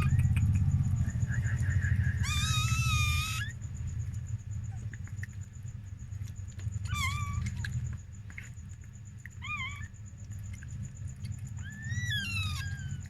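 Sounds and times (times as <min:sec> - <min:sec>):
steady low hum: 0:00.0 - 0:13.0
puppy squealing cry: 0:02.2 - 0:03.6, 0:06.8 - 0:07.7, 0:09.4 - 0:09.9, 0:11.6 - 0:13.0.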